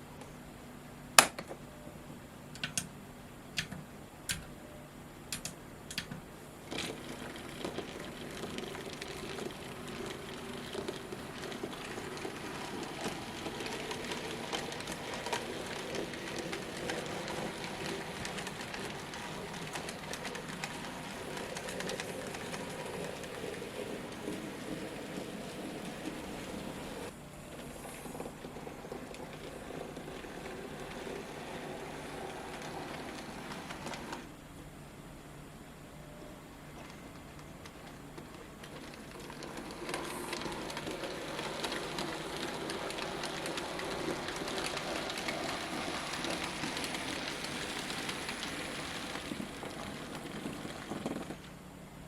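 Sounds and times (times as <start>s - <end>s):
sharp clicks: 5.3s - 6.2s
model train rattling on track: 6.7s - 34.3s, 37.8s - 51.6s.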